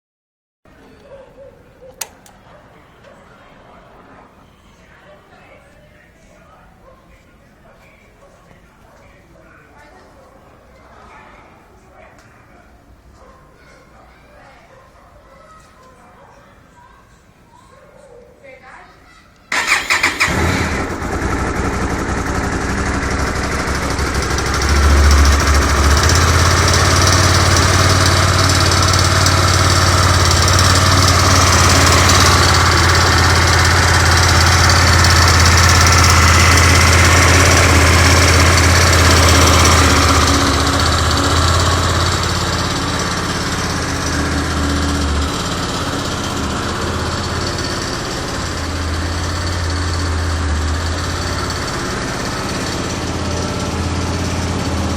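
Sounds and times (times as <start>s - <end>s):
exhaust rattle: 19.5s - 54.9s
motorcycle engine idling: 19.5s - 54.9s.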